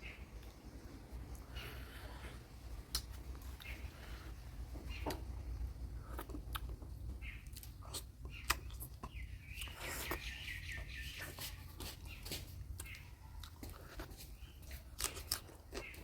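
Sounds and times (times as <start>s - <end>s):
low steady hum: 0.0s - 16.0s
wet chewing mouth clicks: 2.9s - 3.8s, 7.4s - 10.4s, 12.7s - 16.0s.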